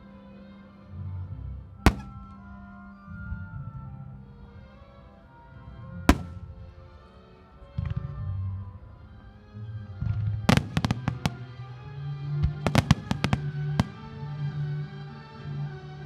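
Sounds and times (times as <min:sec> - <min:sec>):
fireworks cracking: 0:01.9 - 0:02.7, 0:06.1 - 0:07.0, 0:10.5 - 0:11.6, 0:12.6 - 0:14.4.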